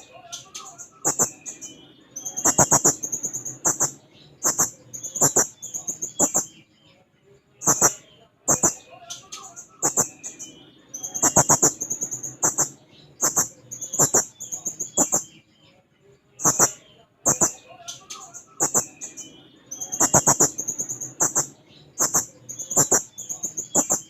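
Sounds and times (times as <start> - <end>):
parrot calling shrill trills: 20.0 - 23.1.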